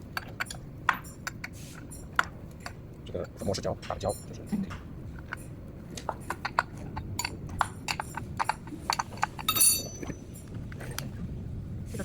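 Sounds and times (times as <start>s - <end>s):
bright ringing clink: 9.5s - 10.3s.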